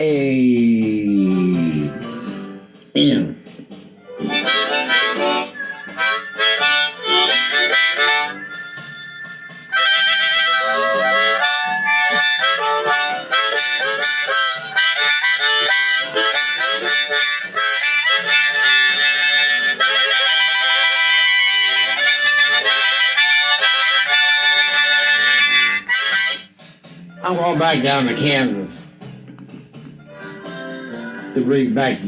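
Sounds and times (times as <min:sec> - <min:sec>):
blues harmonica solo: 0:04.0 - 0:26.5.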